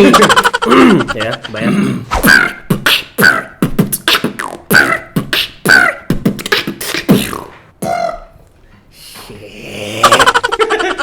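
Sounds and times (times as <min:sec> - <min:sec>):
beatboxing mouth percussion: 0:01.8 - 0:08.4.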